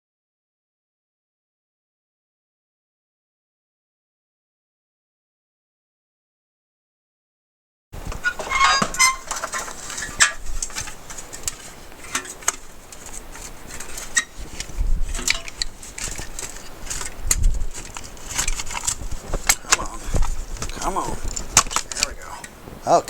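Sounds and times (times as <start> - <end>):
short squeaks: 8.2 - 11.1, 13.8 - 14.5
metal parts clicking and scraping: 8.2 - 22.6.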